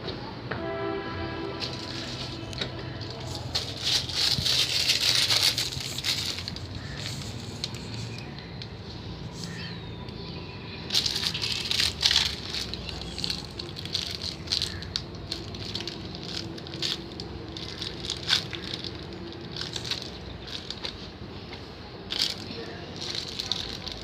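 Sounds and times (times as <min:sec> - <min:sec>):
small hard objects rattling: 0:01.6 - 0:08.6, 0:10.9 - 0:21.0, 0:22.1 - 0:24.0.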